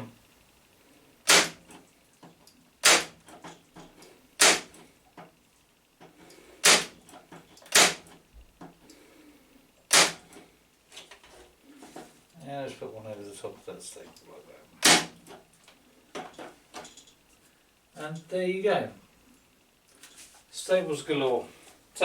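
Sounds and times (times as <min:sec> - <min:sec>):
electric stapler firing into wood: 0:01.2 - 0:01.8, 0:02.8 - 0:03.4, 0:04.4 - 0:04.8, 0:06.6 - 0:07.0, 0:07.7 - 0:08.2, 0:09.9 - 0:10.4, 0:14.8 - 0:15.2.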